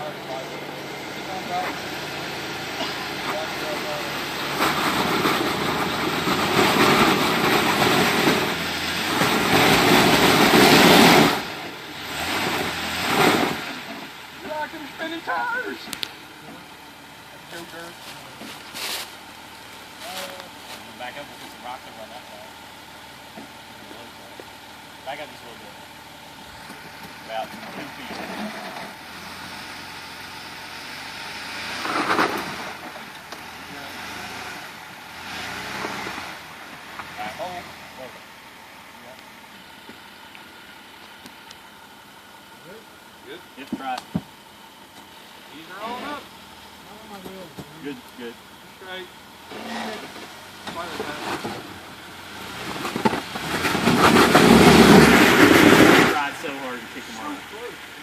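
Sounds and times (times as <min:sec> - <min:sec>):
off-road engine revving hard: 0:00.0 - 0:16.6, 0:25.0 - 0:39.5, 0:45.4 - 0:58.0
tires spinning on rock: 0:00.0 - 0:58.0.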